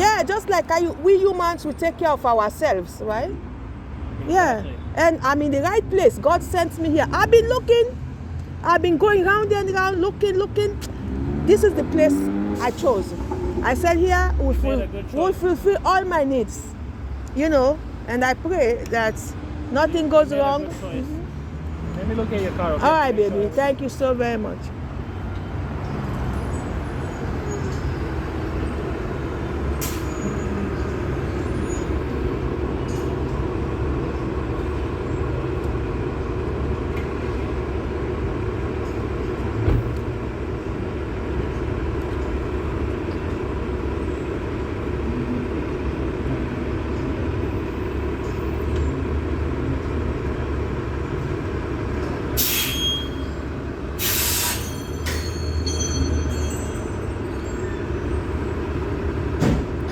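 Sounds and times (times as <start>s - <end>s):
vehicle engine rumble: 0.0s - 59.9s
short loud hisses: 52.4s - 52.9s, 54.0s - 54.7s.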